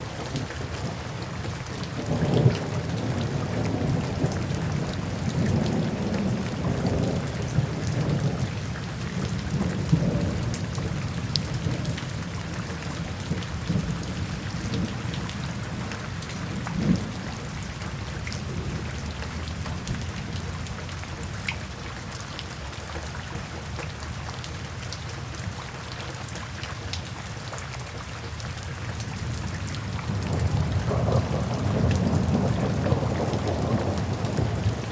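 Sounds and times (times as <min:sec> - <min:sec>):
steady rain falling: 0:00.0 - 0:34.9
low rolling thunder: 0:01.6 - 0:20.7, 0:29.2 - 0:34.9.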